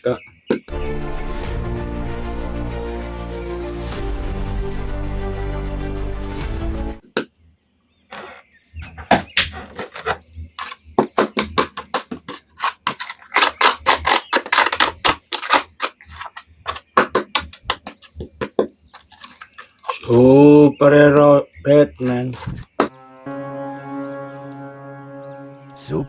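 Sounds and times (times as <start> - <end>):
background music: 0.7 - 7.1, 22.8 - 26.0
plastic toys clicking and tapping: 9.1 - 20.3, 21.8 - 22.9.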